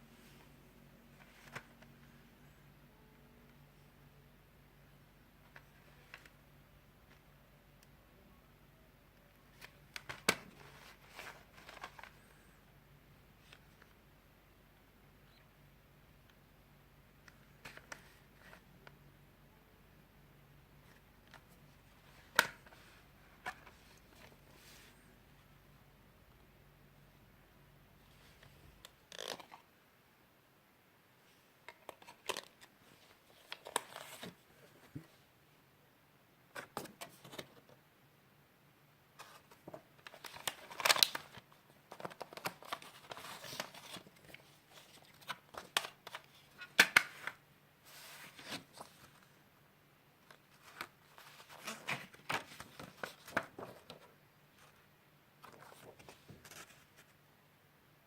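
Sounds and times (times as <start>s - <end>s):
plastic packaging crinkling and tearing: 40.1s - 46.2s.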